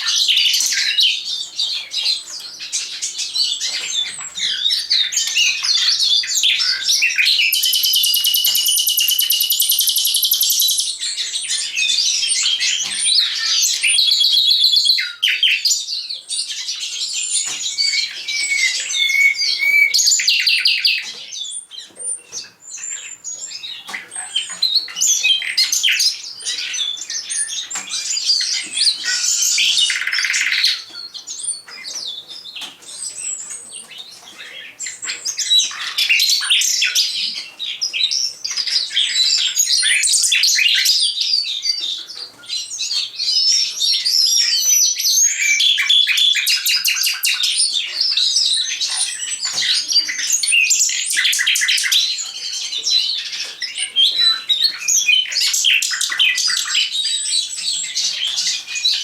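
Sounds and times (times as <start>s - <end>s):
birds singing trills and whistles: 0.0s - 59.0s.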